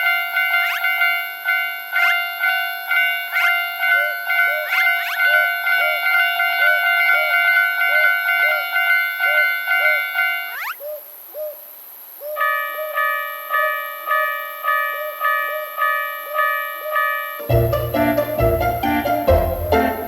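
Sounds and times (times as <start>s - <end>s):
railroad crossing bell ringing: 0.0s - 4.6s, 12.4s - 17.5s.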